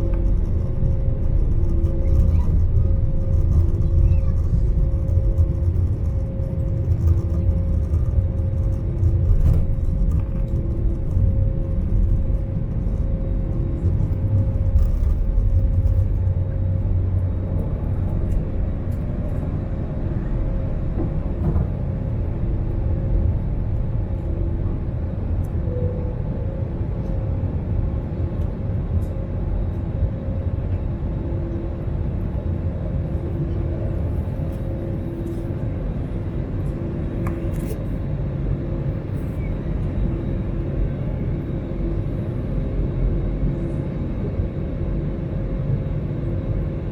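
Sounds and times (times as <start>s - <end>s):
faint pulsing tone: 0.0s - 21.1s, 25.6s - 26.8s
aircraft cabin rumble and hum: 0.0s - 46.9s.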